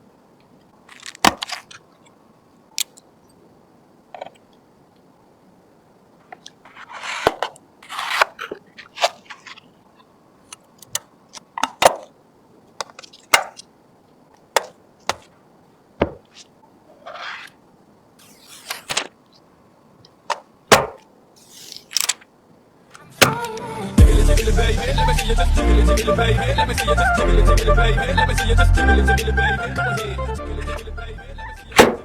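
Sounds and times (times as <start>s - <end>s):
rustling and sliding: 0.8s - 2.1s, 6.2s - 10.6s, 12.8s - 13.7s, 14.5s - 15.4s, 16.0s - 19.5s, 20.1s - 22.3s, 29.4s - 32.0s.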